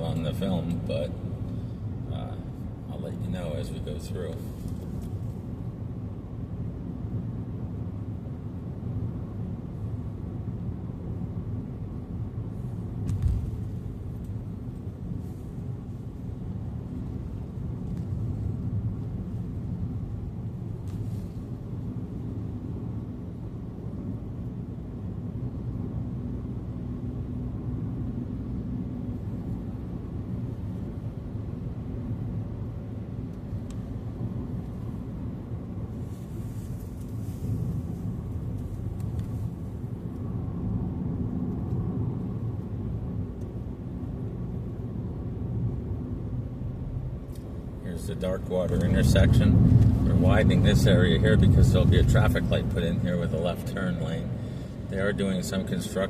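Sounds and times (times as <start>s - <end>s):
car driving cabin rumble: 45.2s - 56.0s.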